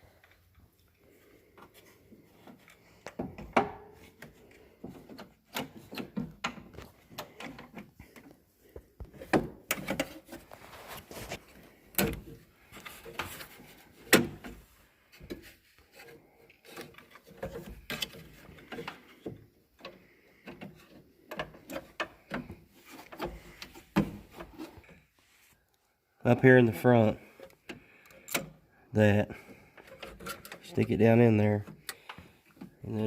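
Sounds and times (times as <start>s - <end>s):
parts clicking and knocking: 2.4s - 10.6s, 11.5s - 25.0s, 29.4s - 32.8s
scraping and rubbing: 9.0s - 14.1s.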